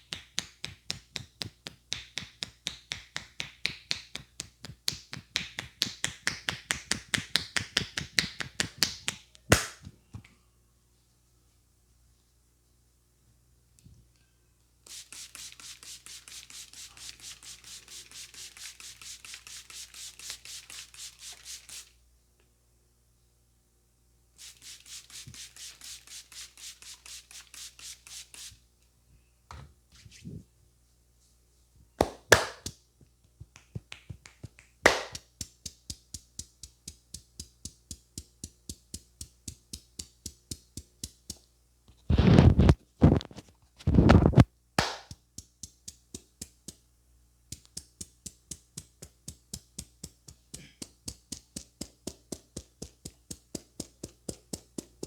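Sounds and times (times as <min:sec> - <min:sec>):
hands rubbing head: 0:00.0 - 0:09.7, 0:14.9 - 0:21.9, 0:24.4 - 0:28.6, 0:32.0 - 0:32.8, 0:33.4 - 0:41.4, 0:42.1 - 0:46.8, 0:47.5 - 0:55.0
rapid hand slaps on head: 0:00.0 - 0:09.9, 0:32.0 - 0:32.8, 0:33.4 - 0:41.4, 0:44.2 - 0:46.8.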